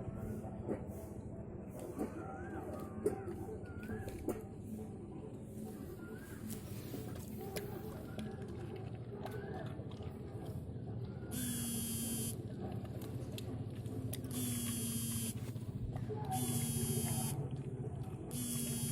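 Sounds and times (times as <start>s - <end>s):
dog chewing: 6.5s - 11.4s.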